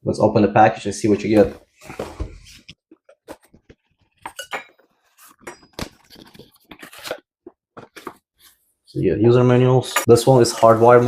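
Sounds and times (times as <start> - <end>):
paper rustling: 5.1 - 8.6.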